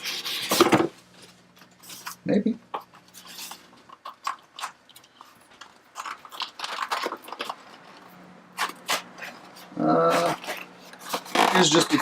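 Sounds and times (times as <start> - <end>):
packaging scraping and clicking: 2.8 - 12.0.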